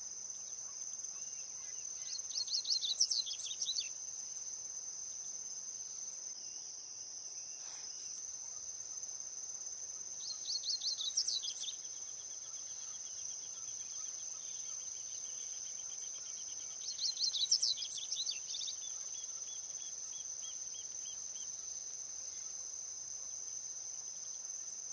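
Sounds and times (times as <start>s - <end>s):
bird song with chirps and trill: 0.3s - 4.5s, 10.1s - 22.7s.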